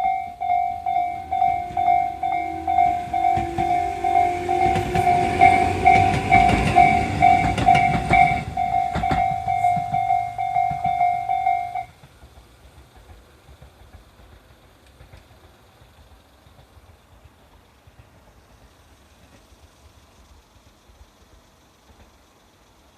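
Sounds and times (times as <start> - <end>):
level crossing bell: 0.0 - 11.9
train wheels clacking: 0.0 - 20.3.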